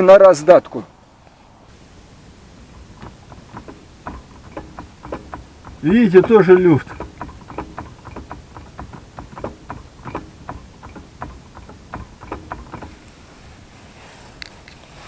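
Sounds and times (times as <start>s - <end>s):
metallic clicks and clunks: 2.6s - 13.6s.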